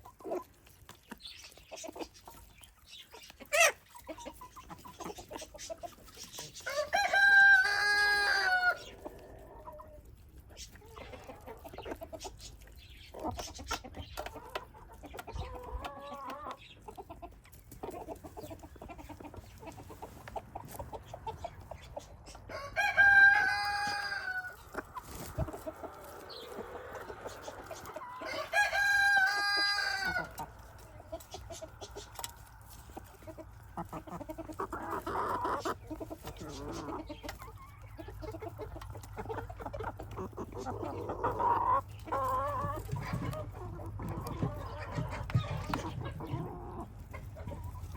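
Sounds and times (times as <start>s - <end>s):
chickens clucking: 0.0s - 47.9s
rooster crowing: 6.7s - 8.8s, 22.5s - 24.6s, 28.2s - 30.4s.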